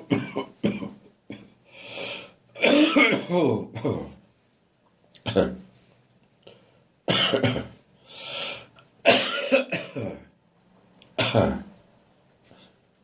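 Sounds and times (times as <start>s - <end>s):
harsh throaty cough: 0.0s - 1.6s, 2.6s - 4.2s, 7.1s - 7.8s, 9.1s - 10.3s, 11.2s - 11.7s
noisy breath drawn in: 1.7s - 2.4s, 8.0s - 8.8s.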